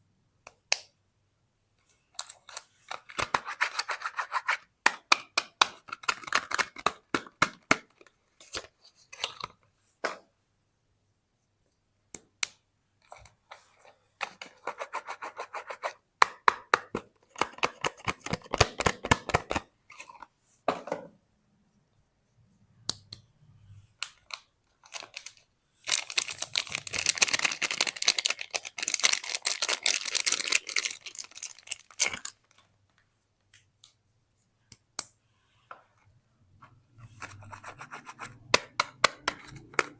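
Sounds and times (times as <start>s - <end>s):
wrapper crinkling: 24.2s - 32.5s.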